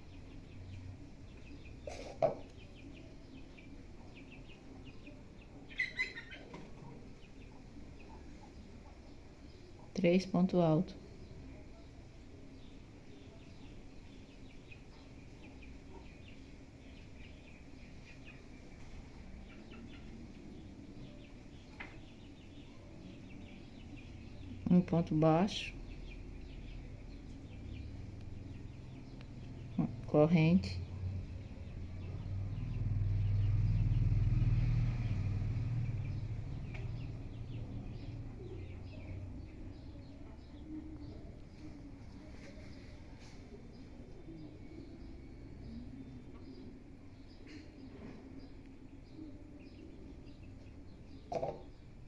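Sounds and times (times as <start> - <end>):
bird chirps: 0.0 - 8.6
faint background noise: 0.0 - 52.0
small birds chirping: 0.0 - 52.0.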